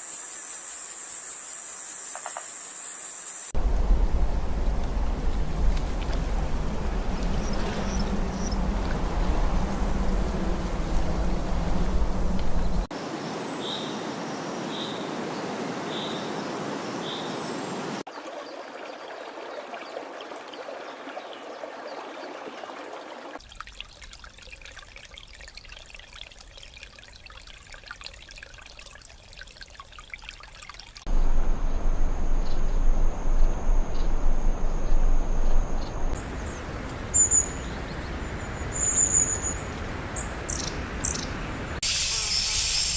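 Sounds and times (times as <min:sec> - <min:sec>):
running water rushing: 0:03.6 - 0:42.9
high-pitched insect drone: 0:41.9 - 0:42.9.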